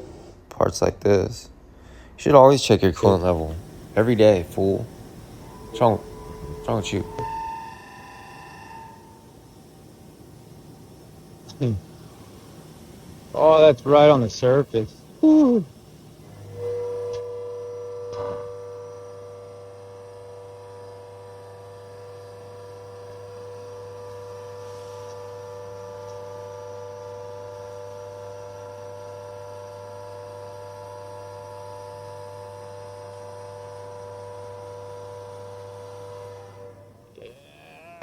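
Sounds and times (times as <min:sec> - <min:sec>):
milling machine whine: 0:02.8 - 0:38.0
low hum: 0:03.2 - 0:13.9.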